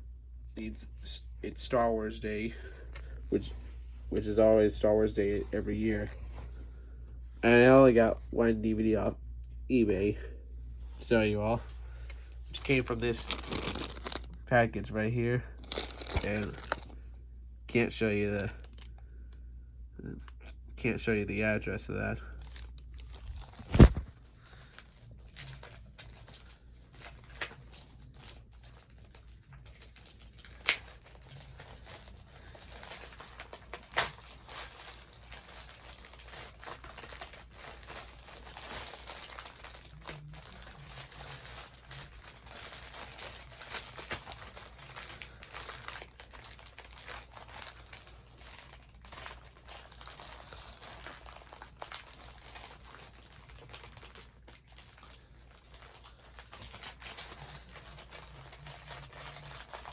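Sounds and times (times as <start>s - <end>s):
package crinkling and tearing: 12.4s - 14.4s, 15.6s - 17.1s, 18.3s - 19.0s, 22.3s - 59.9s.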